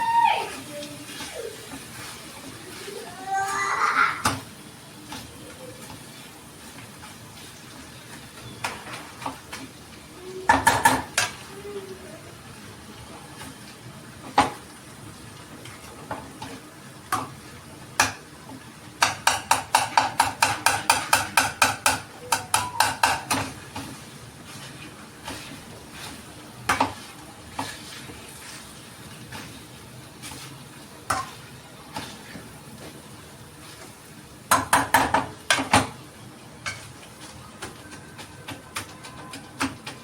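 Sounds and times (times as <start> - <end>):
food sizzling: 0.0 - 40.0
metal utensil knocking on pan: 19.0 - 23.6.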